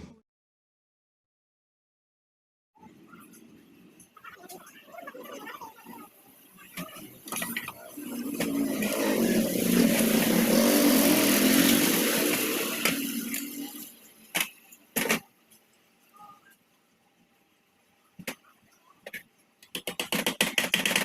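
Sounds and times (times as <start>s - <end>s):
generator engine running: 8.2s - 13.6s.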